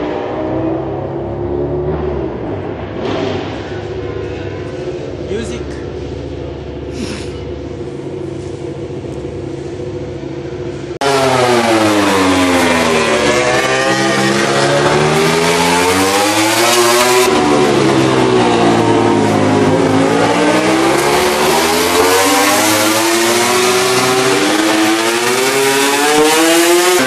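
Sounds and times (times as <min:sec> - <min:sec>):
racing motorcycle engine: 0:00.0 - 0:27.0.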